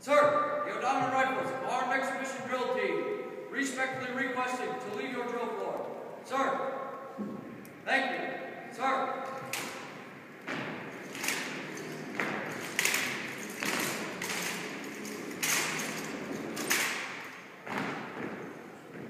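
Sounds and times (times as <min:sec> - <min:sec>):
rifles and boots striking floor: 0:09.2 - 0:19.0.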